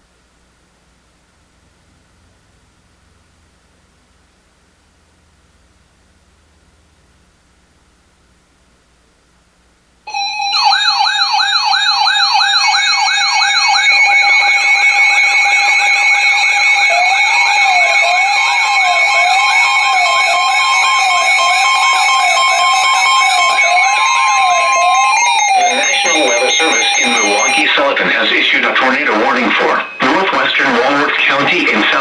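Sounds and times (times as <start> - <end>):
electronic siren yelp: 10.1 - 32.0
siren wail: 10.1 - 32.0
steady high siren tones: 10.1 - 32.0.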